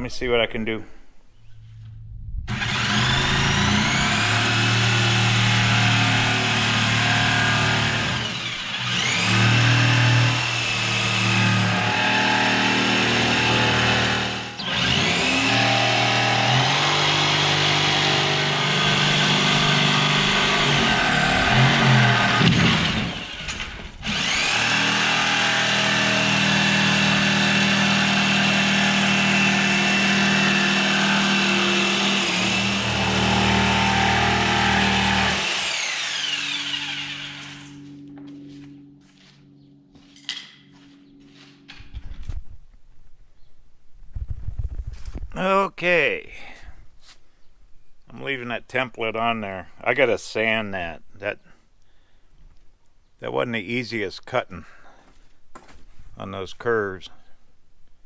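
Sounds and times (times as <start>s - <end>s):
jigsaw cutting board: 2.5s - 38.0s.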